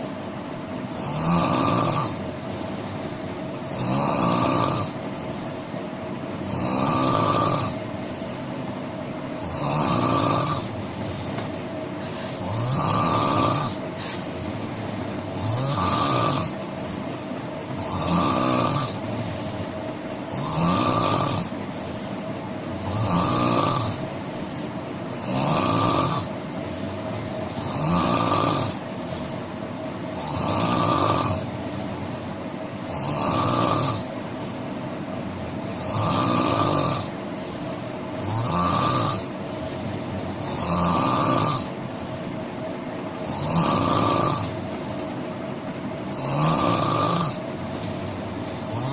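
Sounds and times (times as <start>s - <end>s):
low steady hum: 0.0s - 48.9s
person snoring: 0.9s - 2.8s, 3.7s - 5.5s, 6.4s - 8.4s, 9.4s - 11.4s, 12.0s - 14.4s, 15.3s - 16.6s, 17.7s - 22.2s, 22.8s - 24.6s, 25.2s - 31.6s, 32.8s - 34.2s, 35.7s - 41.8s, 43.2s - 45.0s, 46.0s - 48.9s.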